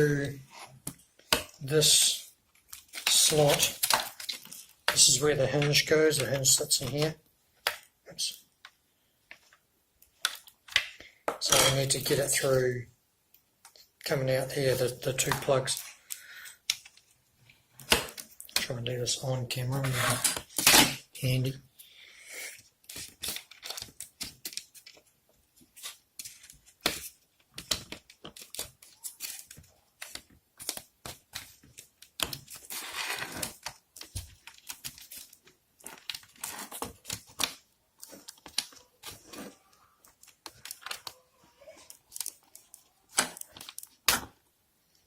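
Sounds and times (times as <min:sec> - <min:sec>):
wire harness rustling: 0:27.4 - 0:44.1.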